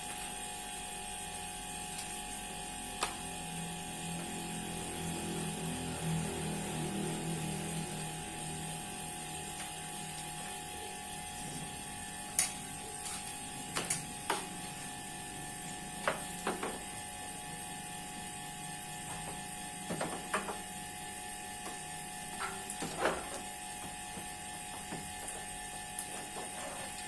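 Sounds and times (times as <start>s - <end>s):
electrical hum with whine: 0.0s - 27.0s.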